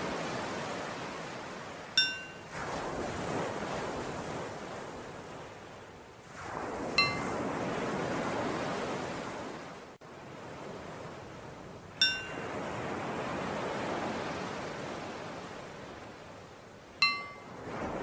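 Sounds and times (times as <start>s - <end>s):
ocean waves breaking: 0.0s - 18.0s
bell strikes ringing: 2.0s - 2.4s, 7.0s - 7.3s, 12.0s - 12.4s, 17.0s - 17.5s.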